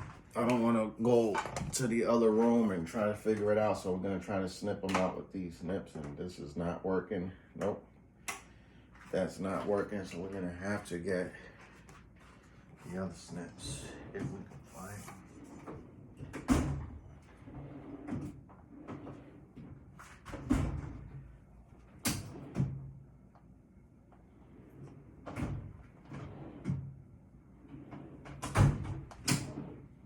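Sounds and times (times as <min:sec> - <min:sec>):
drawers and cupboard doors clattering: 0:27.6 - 0:29.9.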